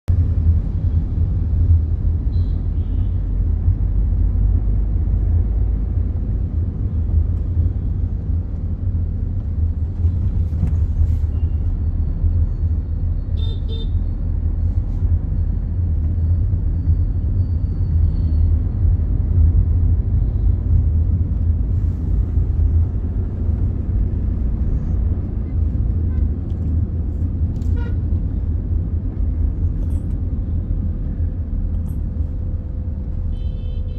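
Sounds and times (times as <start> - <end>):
steady low rumble: 0.1 - 2.3, 18.4 - 33.4.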